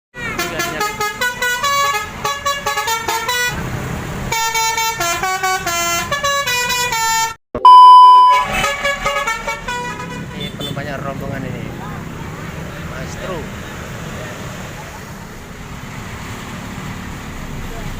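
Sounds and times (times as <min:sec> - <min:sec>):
melodic bus horn tune: 0:00.3 - 0:03.6, 0:04.3 - 0:10.8.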